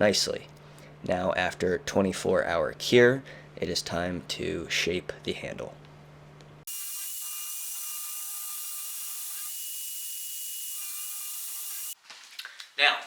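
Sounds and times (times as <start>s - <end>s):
power grinder grinding: 6.7s - 12.0s.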